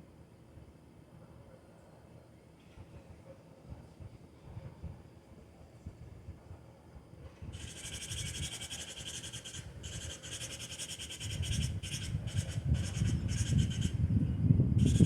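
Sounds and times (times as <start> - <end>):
buzzy pulsing animal call: 7.6 - 14.1, 14.8 - 15.0.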